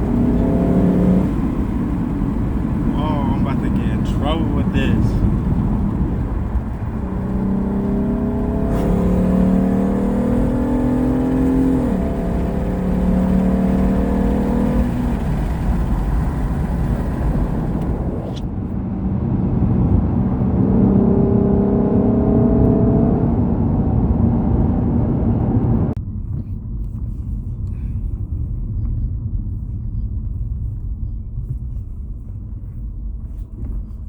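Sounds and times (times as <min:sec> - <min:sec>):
car engine accelerating hard: 0:00.0 - 0:26.0.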